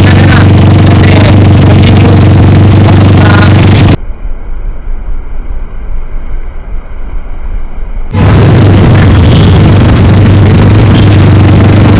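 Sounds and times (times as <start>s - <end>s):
motorcycle engine running: 0.0s - 4.0s, 8.1s - 11.9s
muffled low rumble: 0.0s - 11.9s.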